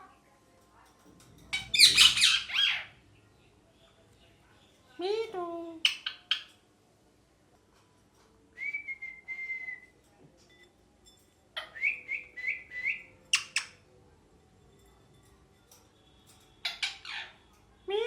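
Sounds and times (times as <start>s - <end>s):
parakeet whistling: 1.6s - 2.9s.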